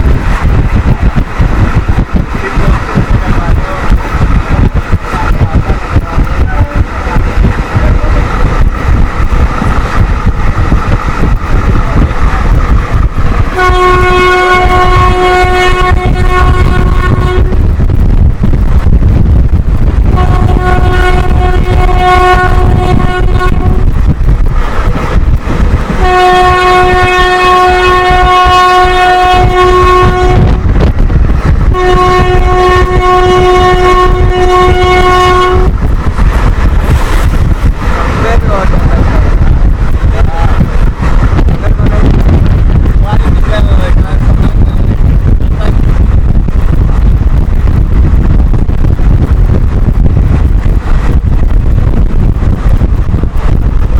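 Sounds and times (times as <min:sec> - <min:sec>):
train rumbling at speed: 0:00.0 - 0:53.9
locomotive horn blasts: 0:13.5 - 0:17.7, 0:20.1 - 0:23.9, 0:26.0 - 0:30.6, 0:31.7 - 0:35.8.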